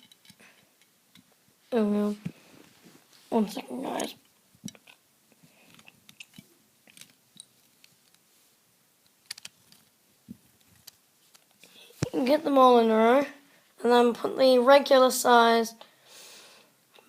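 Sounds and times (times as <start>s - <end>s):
plastic bricks clicking together: 9.2s - 9.9s.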